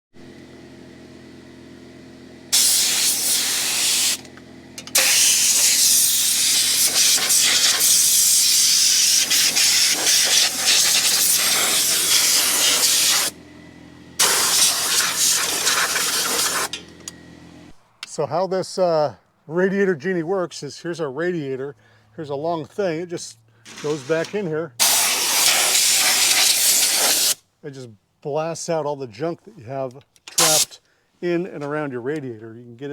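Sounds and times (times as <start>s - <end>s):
compressed air hissing: 2.5s - 13.4s, 14.2s - 16.8s, 23.7s - 27.4s, 30.3s - 30.7s.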